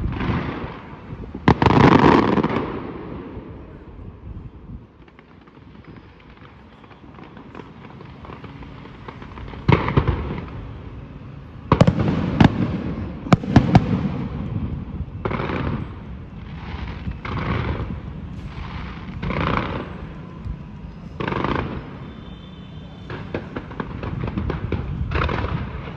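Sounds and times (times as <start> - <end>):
fireworks bangs: 0.0 - 25.9
fireworks crackling bursts: 0.0 - 25.9.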